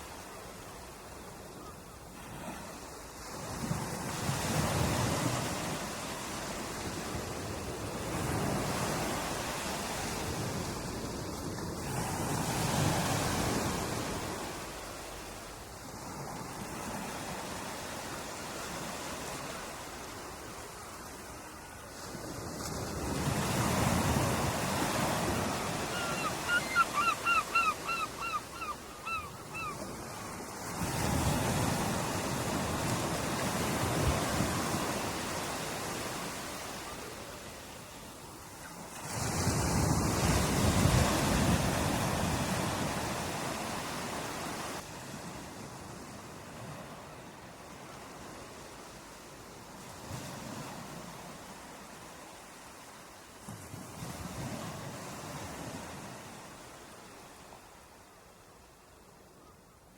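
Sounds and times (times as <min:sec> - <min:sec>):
ocean waves breaking on shore: 0:00.0 - 0:58.8
bird calling short notes: 0:25.9 - 0:29.8.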